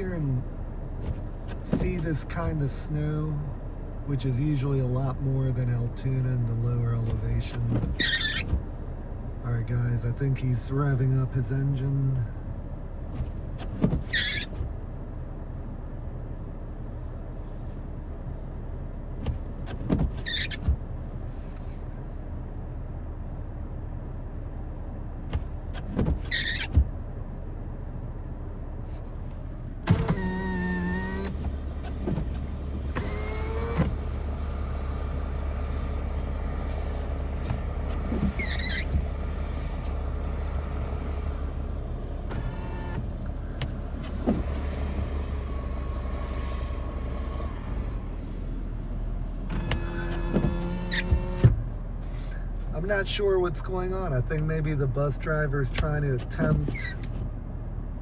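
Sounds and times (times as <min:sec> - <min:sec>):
short high squeaks: 0:08.0 - 0:08.6, 0:13.7 - 0:14.6, 0:20.2 - 0:20.7, 0:25.8 - 0:26.8, 0:29.9 - 0:47.6, 0:49.5 - 0:51.4, 0:56.4 - 0:57.1
bus engine running and revving: 0:11.0 - 0:58.0
whining tones: 0:29.2 - 0:54.5.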